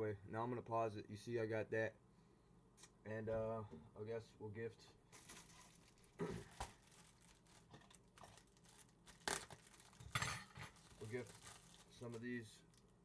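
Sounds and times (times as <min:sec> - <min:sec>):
plastic wrapping crinkling: 0:05.1 - 0:13.0.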